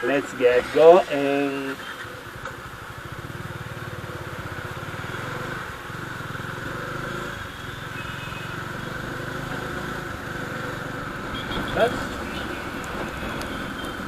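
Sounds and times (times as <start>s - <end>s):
road noise: 0.0s - 14.0s
motorcycle engine running: 1.8s - 14.0s.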